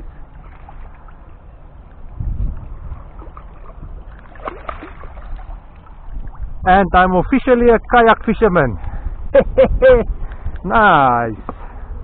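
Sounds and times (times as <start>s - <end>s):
short splashes: 0.0s - 6.5s
water lapping around kayak: 0.0s - 10.7s
wind rumble on microphone: 0.0s - 12.0s.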